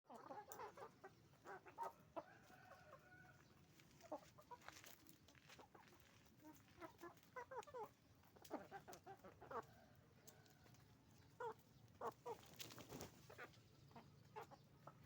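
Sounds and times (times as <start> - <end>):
chickens clucking: 0.1 - 15.0.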